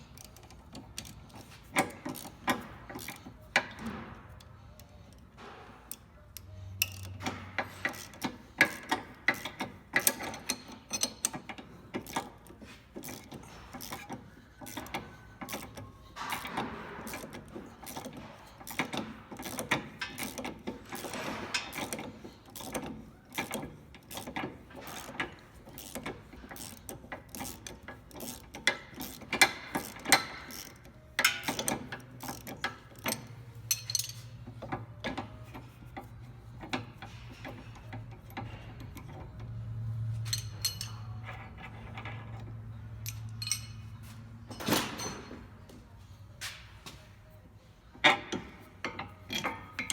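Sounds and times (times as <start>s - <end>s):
hand socket ratchet clicking: 5.9s - 34.3s.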